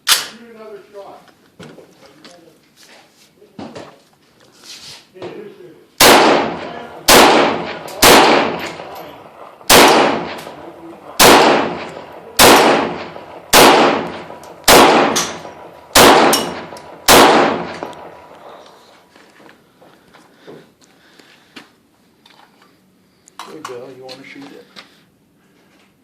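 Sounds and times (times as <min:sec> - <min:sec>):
rifle shots echoing: 0:06.0 - 0:18.9.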